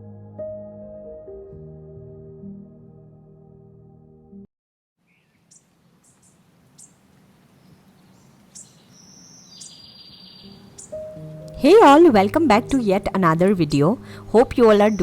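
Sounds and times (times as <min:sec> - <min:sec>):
soft ambient music: 0:00.0 - 0:04.4, 0:10.4 - 0:15.0
faint birds chirping: 0:05.0 - 0:11.8, 0:13.8 - 0:15.0
outdoor background hiss: 0:05.0 - 0:15.0.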